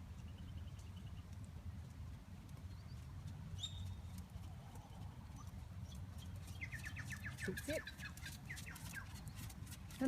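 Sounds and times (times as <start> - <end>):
bird calls: 4.8 - 9.7.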